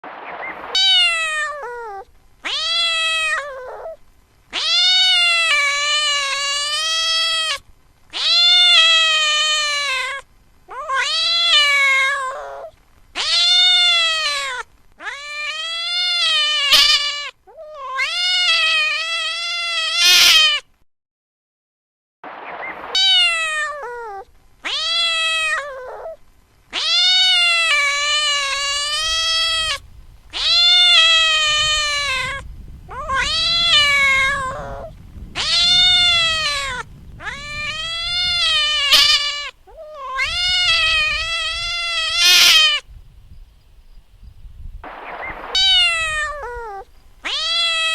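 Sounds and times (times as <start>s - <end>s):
cat meowing: 0.5s - 7.6s, 8.2s - 20.6s, 22.8s - 42.9s, 44.8s - 47.9s.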